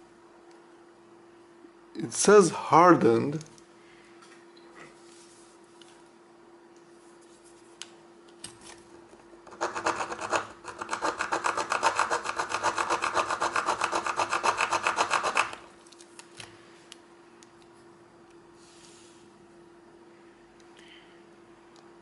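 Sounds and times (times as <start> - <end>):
metal file rasping on steel: 9.6 - 15.6.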